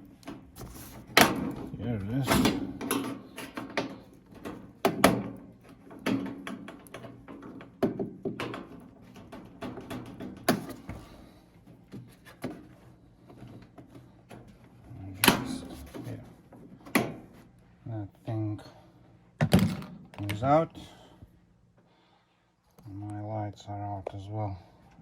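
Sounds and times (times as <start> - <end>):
plastic parts clicking and knocking: 0.1 - 11.0.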